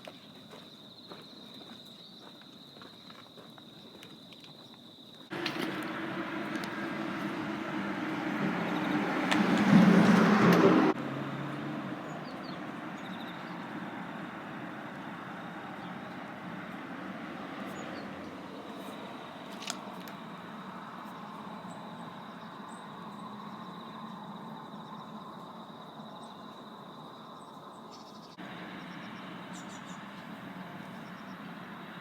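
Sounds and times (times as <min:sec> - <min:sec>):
outdoor background noise: 0:00.0 - 0:32.0
road vehicle passing close: 0:05.3 - 0:25.8, 0:28.4 - 0:32.0.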